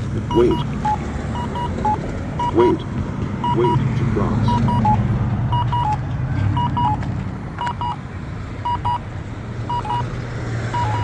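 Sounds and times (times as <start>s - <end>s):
low traffic hum: 0.0s - 11.0s
short double beeps: 0.3s - 2.7s, 3.4s - 3.8s, 4.5s - 5.0s, 5.6s - 6.0s, 6.6s - 7.0s, 7.6s - 8.0s, 8.7s - 9.0s, 9.7s - 10.1s, 10.8s - 11.0s.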